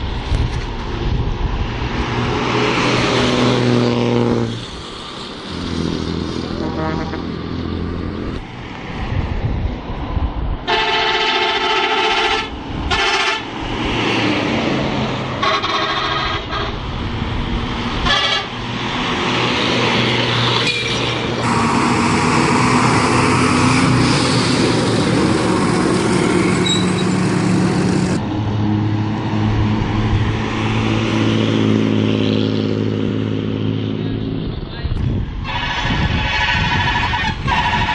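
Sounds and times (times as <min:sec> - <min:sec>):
bus horn blasts: 0:06.5 - 0:07.4, 0:10.7 - 0:13.5, 0:15.4 - 0:16.8, 0:18.0 - 0:18.6, 0:35.4 - 0:37.9.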